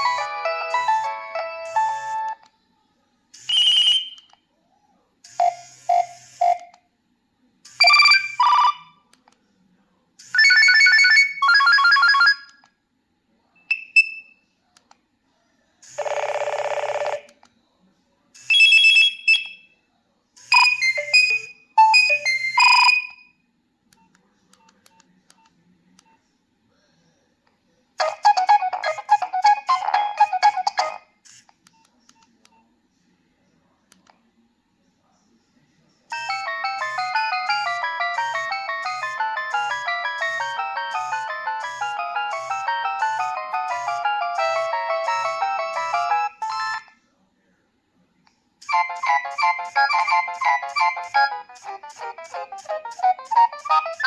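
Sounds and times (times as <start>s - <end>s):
phone melody: 0.0s - 2.4s, 10.4s - 12.4s, 20.5s - 23.2s, 28.0s - 31.0s, 36.1s - 47.0s, 48.7s - 54.0s
phone electronic jingles and beeps: 28.0s - 31.0s, 36.1s - 46.9s, 48.7s - 54.0s.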